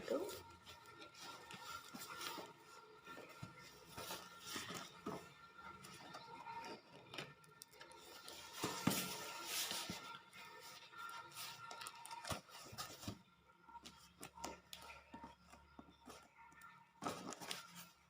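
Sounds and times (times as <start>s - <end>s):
packaging crinkling and rustling: 0.0s - 13.2s
faint background music: 0.0s - 18.0s.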